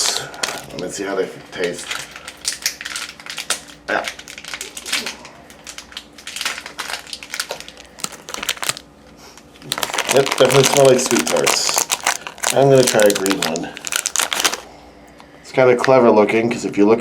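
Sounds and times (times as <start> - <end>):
candy wrapper crinkling: 0.0 - 8.9, 9.6 - 14.7.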